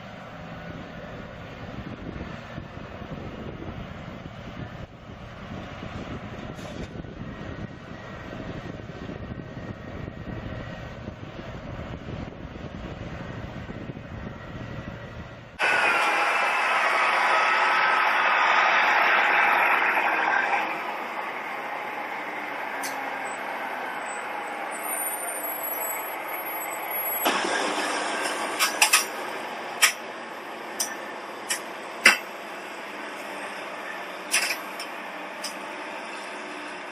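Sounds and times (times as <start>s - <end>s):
large engine rumbling: 0.0s - 36.9s
heavy machinery running: 12.6s - 36.9s.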